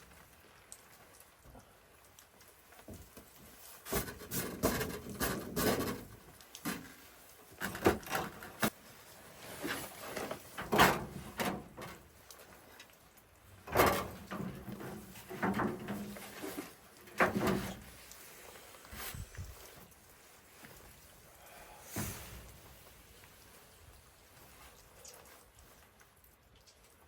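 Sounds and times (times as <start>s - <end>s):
irregular knocks and scrapes: 2.8s - 12.1s, 13.7s - 18.3s, 21.9s - 23.1s.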